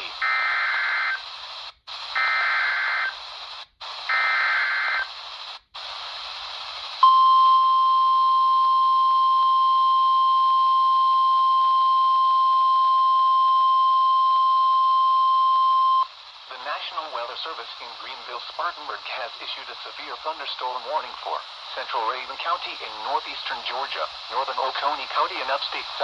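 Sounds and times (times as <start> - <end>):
radio reception hiss: 0.0 - 7.2, 12.8 - 26.0.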